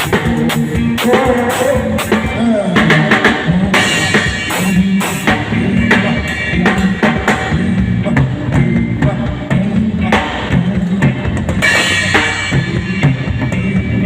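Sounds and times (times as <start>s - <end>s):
drum kit playing: 0.0s - 14.0s
music track with bass line: 0.0s - 14.0s.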